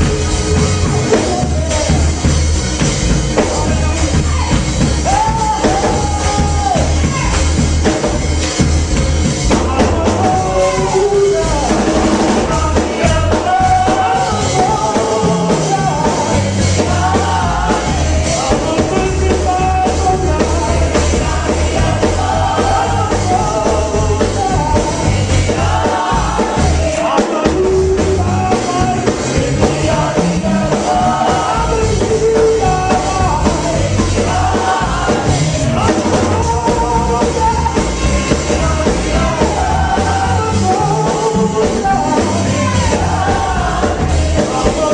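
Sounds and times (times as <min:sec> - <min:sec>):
band with drums and heavy bass: 0:00.0 - 0:44.9
people singing: 0:00.0 - 0:44.9.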